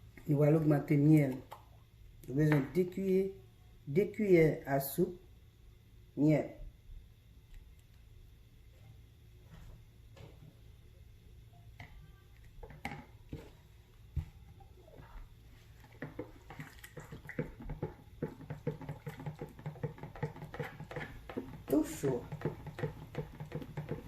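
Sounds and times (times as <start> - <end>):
spoon stirring liquid: 14.6 - 24.0
spoon knocking in pot: 15.9 - 24.0.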